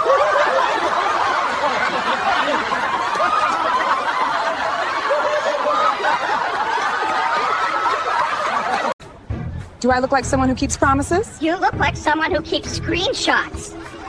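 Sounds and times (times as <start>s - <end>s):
people laughing: 0.0s - 9.0s.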